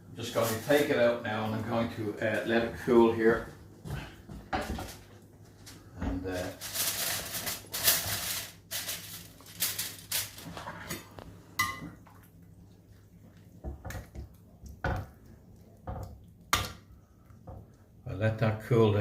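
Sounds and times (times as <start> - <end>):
rustling: 4.7 - 11.2.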